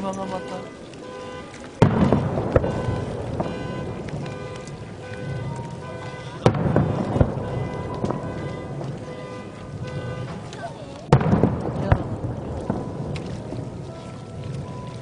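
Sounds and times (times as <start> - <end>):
fireworks bangs: 0.0 - 14.0
fireworks pops and rumble: 0.0 - 15.0
music: 12.7 - 15.0.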